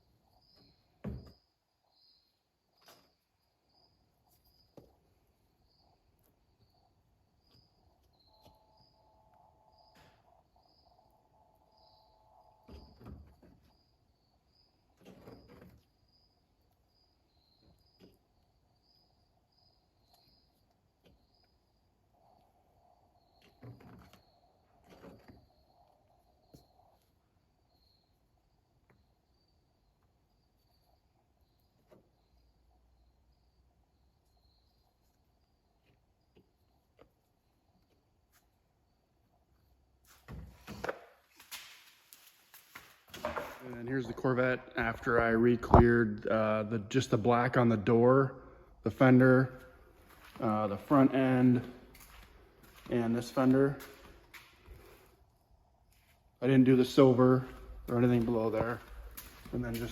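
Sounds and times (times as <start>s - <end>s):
cricket chirping: 0.0s - 59.9s.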